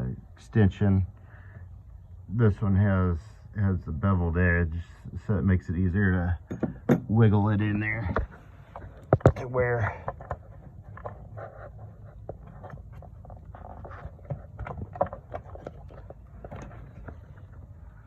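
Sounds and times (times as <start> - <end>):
low steady hum: 0.0 - 18.0
hand tools clicking and knocking: 6.4 - 7.2.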